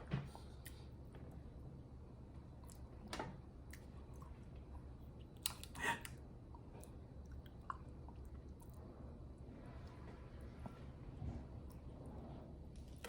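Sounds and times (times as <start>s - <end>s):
person chewing food: 3.6s - 8.9s.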